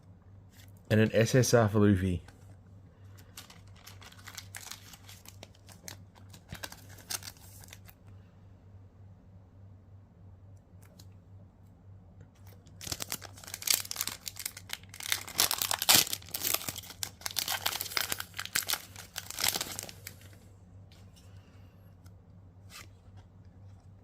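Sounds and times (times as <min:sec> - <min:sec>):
wrapper tearing and crinkling: 0:03.3 - 0:08.0, 0:12.5 - 0:20.2.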